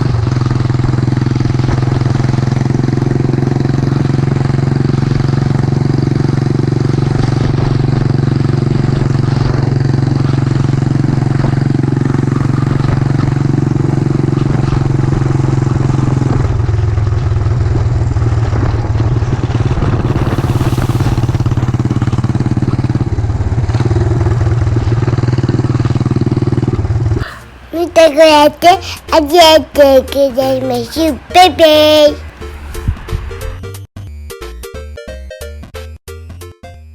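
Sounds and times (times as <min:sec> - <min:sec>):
motorcycle engine running: 0:00.0 - 0:27.6.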